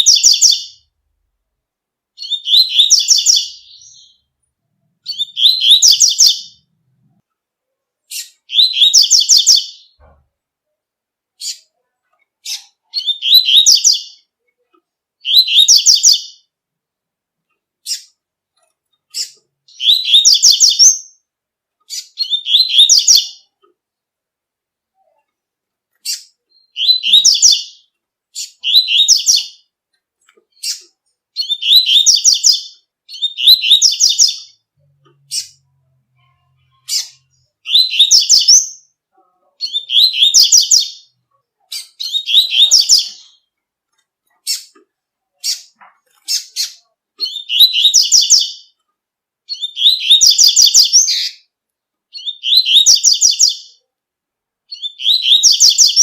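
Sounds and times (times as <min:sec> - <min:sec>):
sharp bird chirps: 0:00.0 - 0:00.8, 0:02.2 - 0:04.3, 0:05.0 - 0:06.7, 0:08.1 - 0:10.1, 0:12.4 - 0:14.3, 0:15.2 - 0:16.5, 0:19.1 - 0:21.3, 0:21.9 - 0:23.5, 0:26.0 - 0:29.7, 0:30.5 - 0:34.6, 0:36.7 - 0:38.9, 0:39.6 - 0:41.1, 0:41.7 - 0:43.4, 0:45.4 - 0:48.8, 0:49.5 - 0:51.5, 0:52.1 - 0:53.8, 0:54.7 - 0:56.0
bird trilling song: 0:00.0 - 0:00.9, 0:02.2 - 0:04.3, 0:05.0 - 0:06.7, 0:08.0 - 0:10.1, 0:11.4 - 0:11.8, 0:12.4 - 0:14.3, 0:15.2 - 0:16.5, 0:17.8 - 0:18.2, 0:19.0 - 0:21.3, 0:21.9 - 0:23.7, 0:25.9 - 0:29.7, 0:30.5 - 0:43.5, 0:44.2 - 0:48.8, 0:49.5 - 0:51.5, 0:52.1 - 0:53.8, 0:54.7 - 0:56.0.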